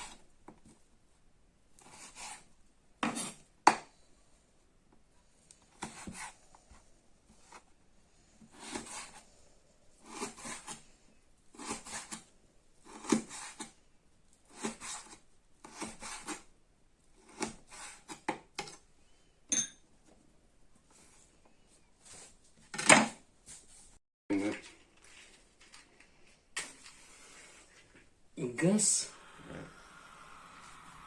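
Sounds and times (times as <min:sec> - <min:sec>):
knife cutting fat: 0:11.6 - 0:13.7
metallic clink: 0:19.5 - 0:19.8.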